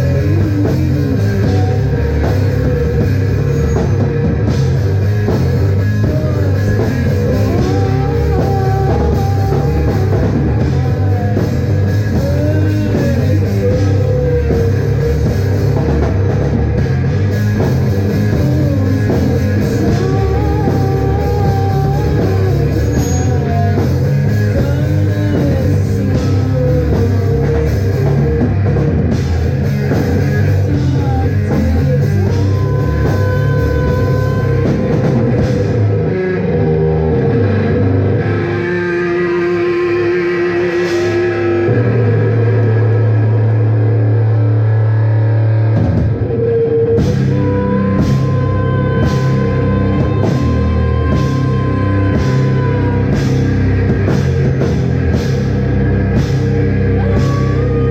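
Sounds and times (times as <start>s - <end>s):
drum kit beat: 0.0s - 36.2s, 45.8s - 57.9s
electric guitar: 0.0s - 57.9s.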